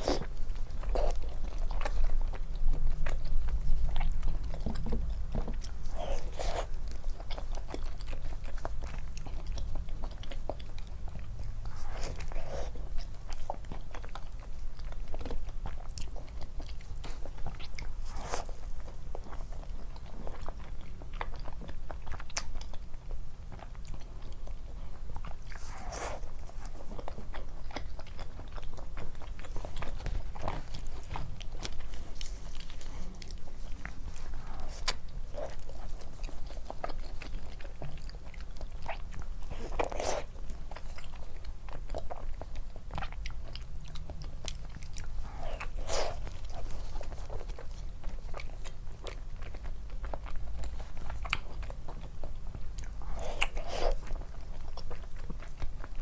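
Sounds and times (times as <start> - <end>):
chewing soft food: 0.0 - 56.0
steady low hum: 0.0 - 56.0.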